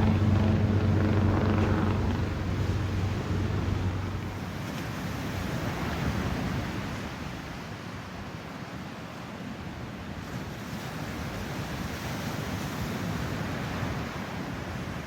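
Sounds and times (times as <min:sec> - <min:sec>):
ocean surf breaking: 0:00.0 - 0:05.8
wind rumbling on microphone: 0:00.0 - 0:06.6.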